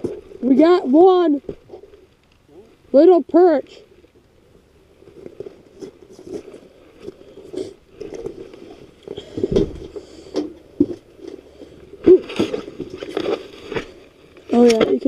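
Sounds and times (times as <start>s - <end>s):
handling knocks and scrapes: 5.1s - 15.0s
heavy thump: 9.3s - 9.9s.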